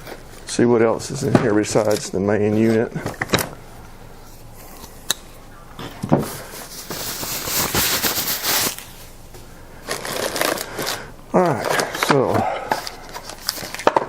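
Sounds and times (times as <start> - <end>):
crinkly packaging rustling: 5.8 - 14.0.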